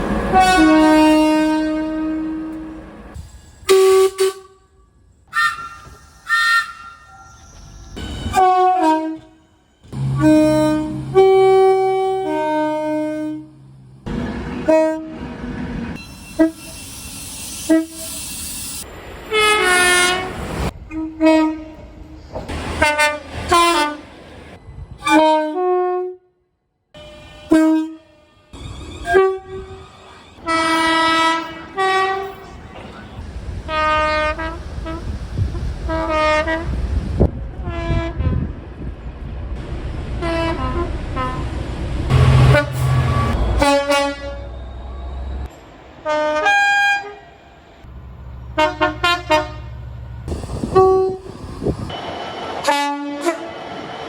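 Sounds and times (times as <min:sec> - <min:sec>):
low locomotive hum: 0:00.0 - 0:16.7, 0:27.0 - 0:53.9
train running: 0:00.0 - 0:25.7, 0:27.0 - 0:54.0
train horn blasts: 0:00.3 - 0:02.9, 0:03.6 - 0:07.2, 0:08.2 - 0:13.7, 0:14.6 - 0:15.3, 0:19.3 - 0:21.9, 0:25.0 - 0:26.3, 0:27.0 - 0:29.8, 0:30.4 - 0:32.6, 0:33.7 - 0:35.1, 0:35.9 - 0:36.8, 0:37.6 - 0:38.5, 0:40.2 - 0:41.4, 0:42.1 - 0:45.0, 0:46.0 - 0:47.5, 0:48.5 - 0:51.9, 0:52.6 - 0:53.5.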